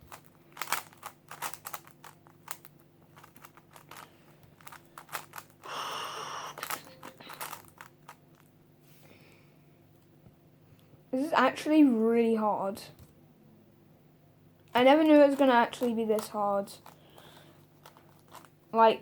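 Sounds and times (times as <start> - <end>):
speedcube layers clicking: 0.1 - 5.7, 6.5 - 8.2, 14.8 - 17.0.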